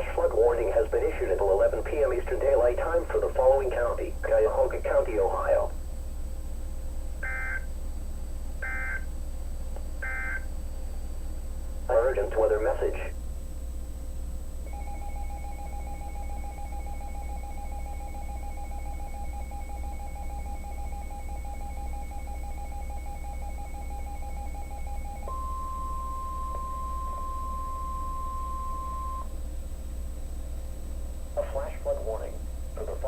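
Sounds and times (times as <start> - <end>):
low steady hum: 0.0 - 33.0
single-pitched alarm tone: 7.2 - 7.7, 8.6 - 9.1, 10.0 - 10.5, 14.7 - 29.3
buzzing electronic data tones: 14.7 - 29.3.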